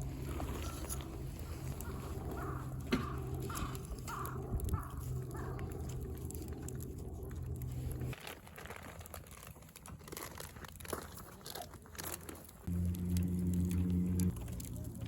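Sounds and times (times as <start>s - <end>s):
low steady hum: 0.0s - 8.2s, 12.7s - 15.0s
campfire wood crackling: 0.0s - 15.0s
bird calling: 0.2s - 8.0s.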